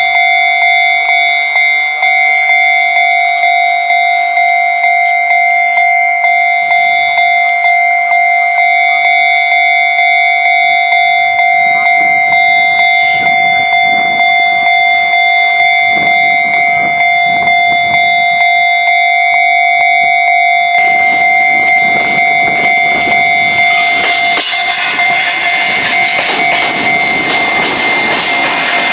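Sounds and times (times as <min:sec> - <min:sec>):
level-crossing warning bell: 0:00.0 - 0:28.9
train rumble: 0:19.3 - 0:28.9.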